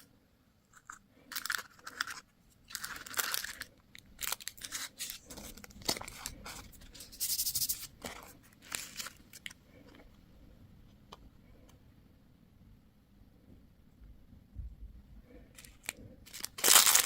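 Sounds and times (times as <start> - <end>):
packaging crinkling and tearing: 1.3 - 9.6, 15.6 - 17.0.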